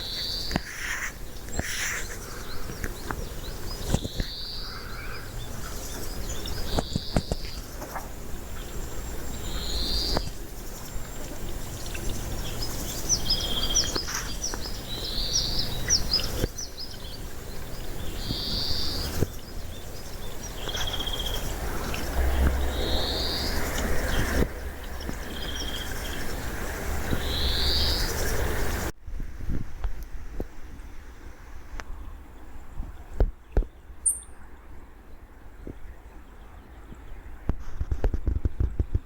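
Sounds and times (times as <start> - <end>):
chipmunk chirping: 34.0 - 34.4.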